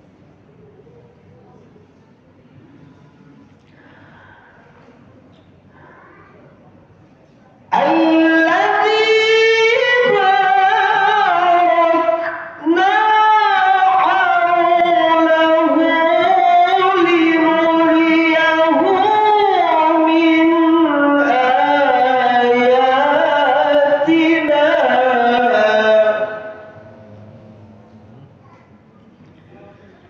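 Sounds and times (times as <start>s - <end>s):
man reciting melodically: 7.7s - 28.2s.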